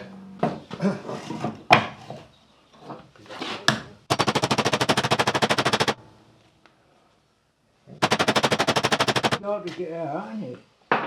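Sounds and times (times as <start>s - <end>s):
rapid hammering: 4.1s - 6.0s, 8.0s - 9.4s.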